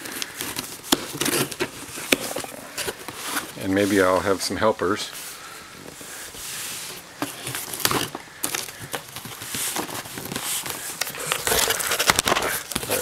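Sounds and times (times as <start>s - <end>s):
packaging being torn and crinkled: 7.4s - 13.0s.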